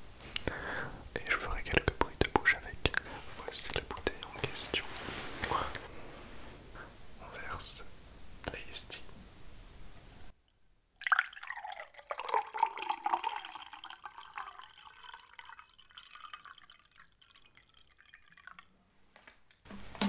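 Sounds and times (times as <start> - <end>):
wet mouth clicks and smacks: 0.2 - 0.5.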